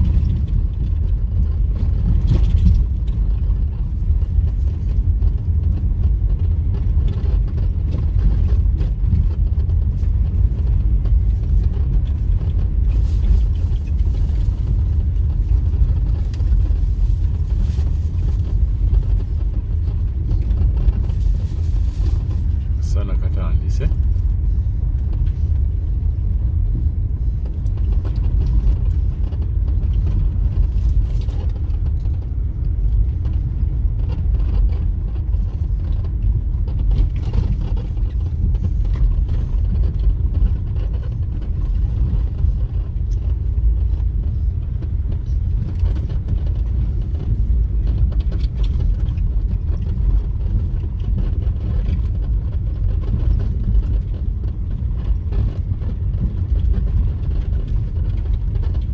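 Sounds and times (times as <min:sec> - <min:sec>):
vehicle rumbling on rough road: 0:00.0 - 0:58.9
small rattles and knocks: 0:26.7 - 0:58.9.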